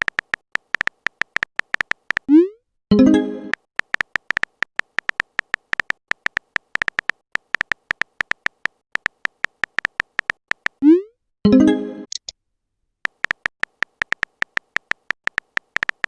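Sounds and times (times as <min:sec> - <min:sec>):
phone keyboard typing clicks: 0:00.0 - 0:02.3, 0:03.5 - 0:10.8, 0:13.1 - 0:16.0.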